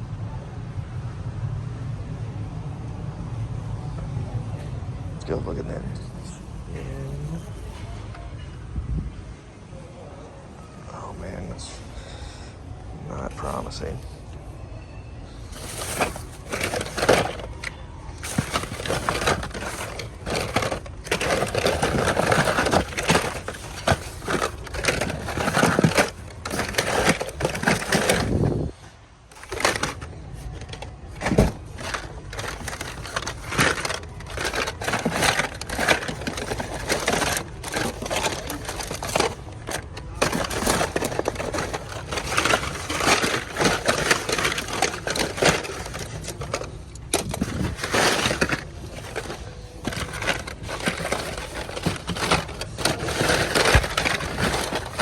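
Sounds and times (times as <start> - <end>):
plastic packaging rustling and clattering: 15.4 - 55.0.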